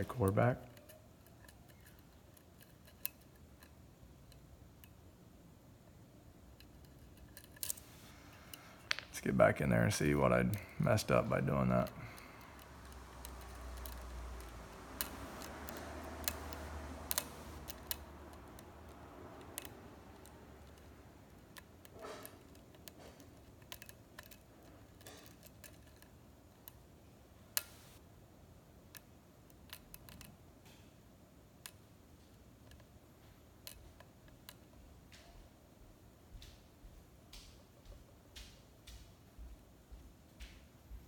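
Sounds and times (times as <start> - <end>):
lock pick metallic clicks: 6.6 - 26.8.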